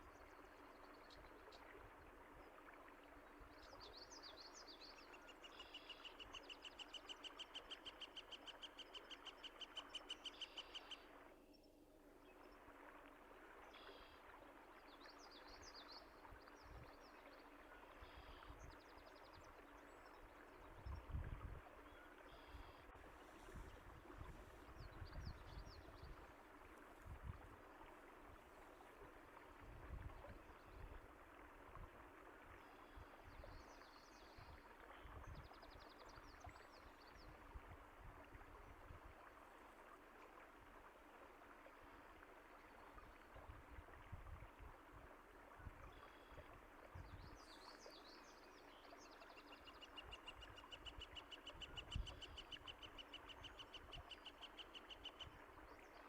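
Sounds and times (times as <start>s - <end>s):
stream flowing: 0.0s - 56.0s.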